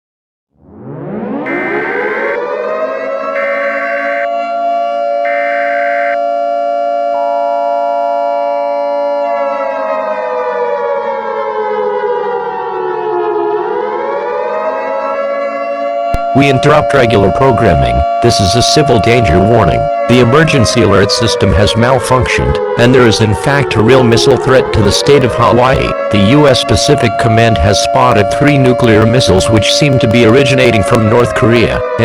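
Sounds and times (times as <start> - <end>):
air-raid siren wailing: 0.6 - 6.4, 25.8 - 26.9
short higher tones: 1.5 - 2.4, 3.4 - 4.3, 5.3 - 6.2.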